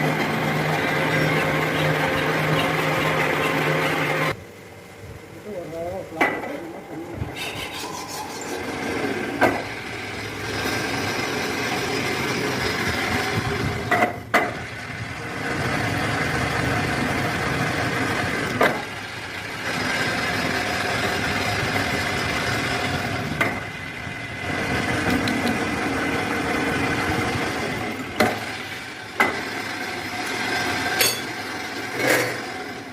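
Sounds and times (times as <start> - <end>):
workshop machinery whining: 0.0 - 32.9
sharp clicks and knocks: 13.9 - 14.6, 29.2 - 29.4.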